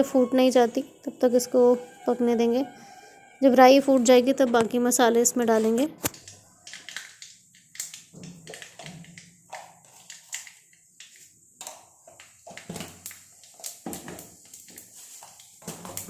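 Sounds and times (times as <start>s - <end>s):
seeds popping in hot oil: 4.6s - 16.0s.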